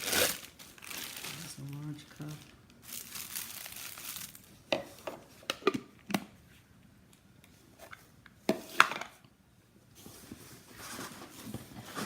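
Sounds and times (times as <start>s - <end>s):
packaging rustling: 0.0s - 5.0s.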